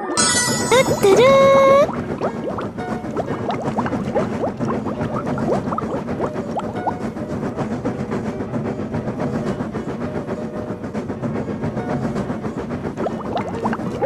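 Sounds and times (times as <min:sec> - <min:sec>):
train rumbling along rails: 0:00.0 - 0:14.0.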